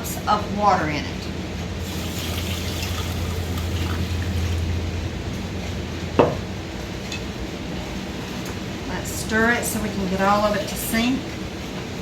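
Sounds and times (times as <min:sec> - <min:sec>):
air conditioner hum: 0:00.0 - 0:12.0
water pouring into pot: 0:01.8 - 0:04.8.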